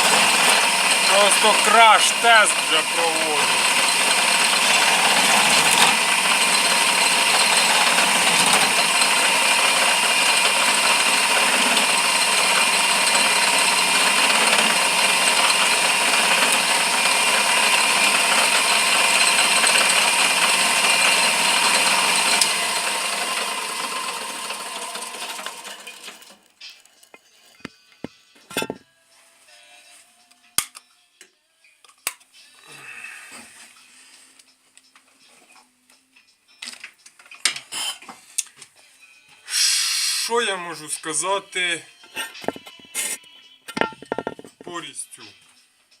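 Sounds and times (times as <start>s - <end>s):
lathe rattling: 0.0s - 26.4s, 43.7s - 44.7s.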